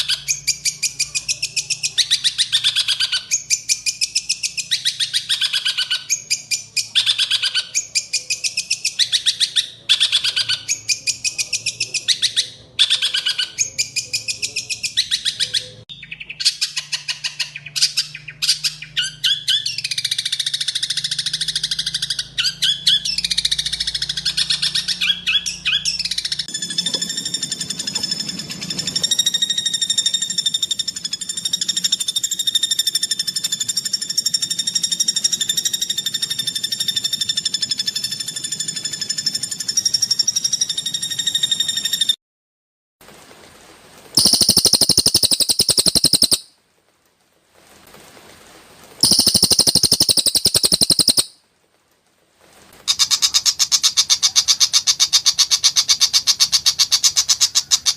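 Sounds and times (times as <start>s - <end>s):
bird song harsh chatter: 0.0s - 42.1s, 44.2s - 46.5s, 49.0s - 51.4s
steady buzzing trill: 44.2s - 46.5s, 49.0s - 51.3s.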